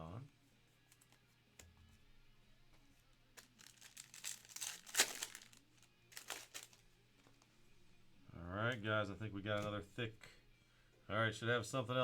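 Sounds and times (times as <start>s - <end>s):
foil wrapper crinkling and tearing: 3.4s - 6.8s.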